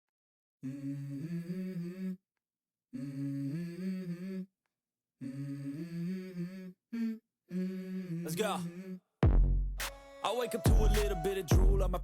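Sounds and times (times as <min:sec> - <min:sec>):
person humming a melody: 0:10.6 - 0:12.0.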